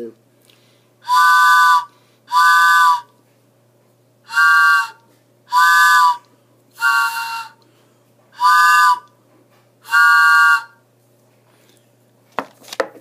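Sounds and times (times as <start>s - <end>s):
mouth-blown train whistle blasts: 1.0s - 3.1s, 4.3s - 7.6s, 8.4s - 9.1s, 9.8s - 10.8s.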